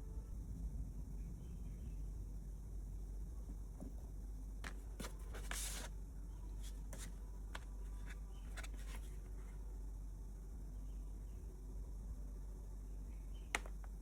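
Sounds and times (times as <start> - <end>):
low steady hum: 0.0 - 14.0
scratchy packaging rustle: 4.6 - 5.9, 6.5 - 9.6.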